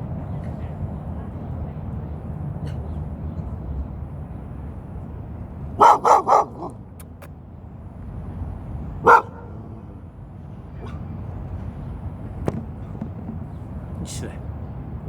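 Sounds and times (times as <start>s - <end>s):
dog barking: 5.8s - 6.8s, 9.0s - 9.6s.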